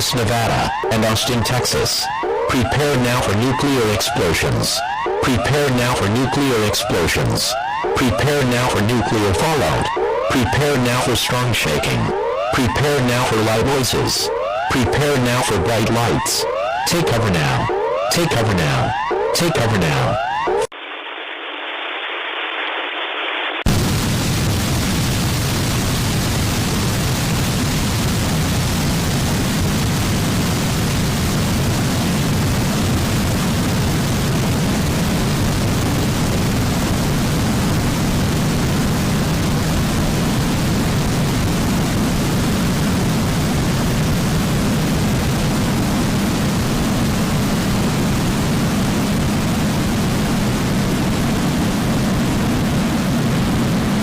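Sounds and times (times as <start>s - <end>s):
loud steady rushing with low rumble: 20.8s - 54.0s.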